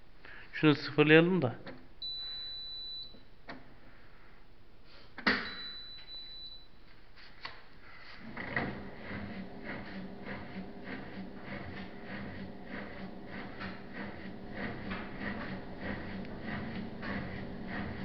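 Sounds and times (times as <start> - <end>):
short high beeps: 2.0 - 3.2, 5.4 - 6.7
washing machine humming and knocking: 8.2 - 18.0.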